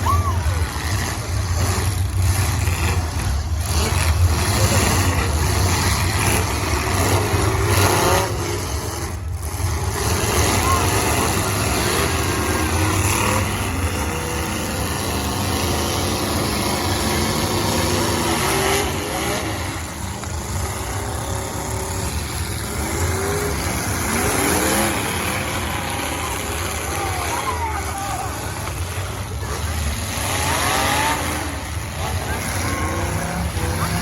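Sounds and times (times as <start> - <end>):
car engines revving hard: 0.0 - 34.0.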